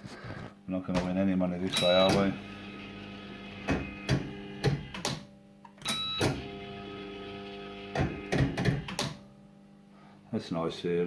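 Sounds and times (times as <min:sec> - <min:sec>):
fruit machine clunks: 0:01.7 - 0:02.4
electronic machine tones: 0:01.7 - 0:04.6.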